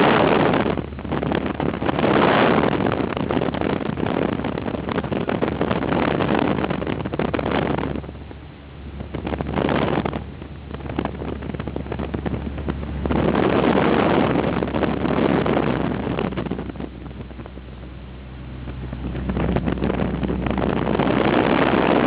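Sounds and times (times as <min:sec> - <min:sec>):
steady low hum: 0:00.0 - 0:22.0
wind gusting on microphone: 0:00.0 - 0:22.0.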